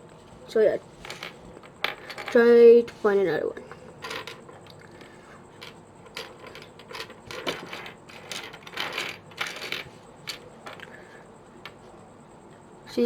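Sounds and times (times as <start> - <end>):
plastic puzzle pieces clicking: 4.0 - 11.0.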